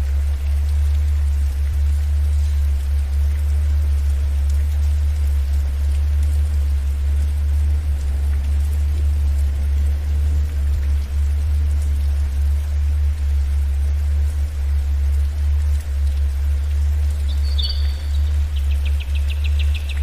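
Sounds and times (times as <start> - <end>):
rain patter: 0.0 - 20.0
water dripping: 0.0 - 20.0
low drone tone: 17.0 - 20.0.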